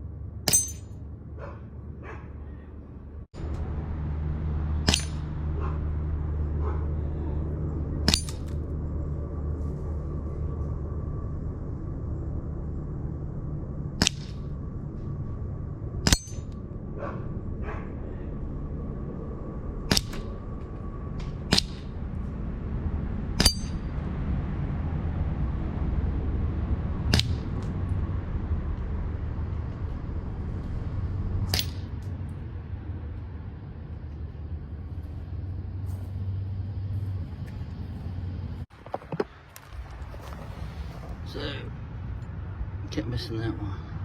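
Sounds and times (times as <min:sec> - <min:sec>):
metallic ping of steel target: 0:00.5 - 0:01.0, 0:04.8 - 0:05.3, 0:08.0 - 0:08.6, 0:16.0 - 0:16.6, 0:23.4 - 0:23.9, 0:31.5 - 0:31.9.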